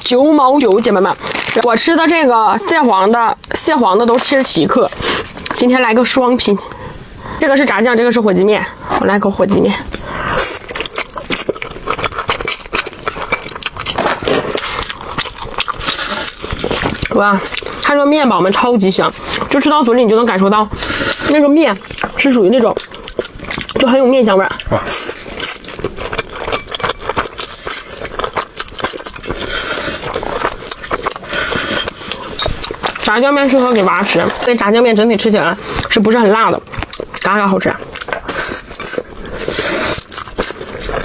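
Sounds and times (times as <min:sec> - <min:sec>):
noodles slurping and chewing: 0:00.0 - 0:41.0
utensils scraping a bowl: 0:28.8 - 0:34.7, 0:38.1 - 0:41.0.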